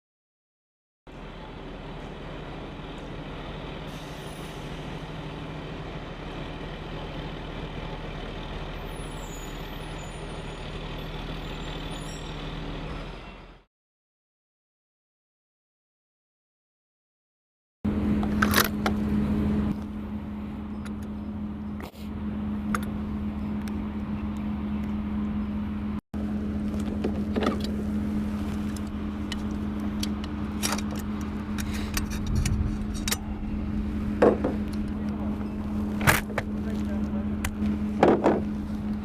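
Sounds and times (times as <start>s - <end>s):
low mechanical hum: 17.9s - 39.0s.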